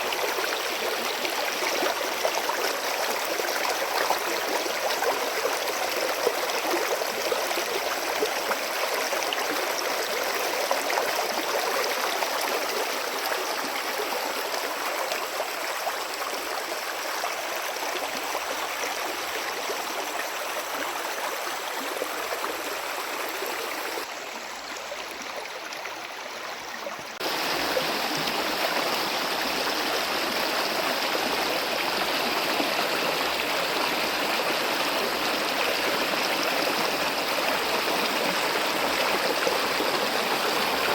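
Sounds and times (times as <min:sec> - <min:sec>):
stream water flowing: 0:00.0 - 0:40.9.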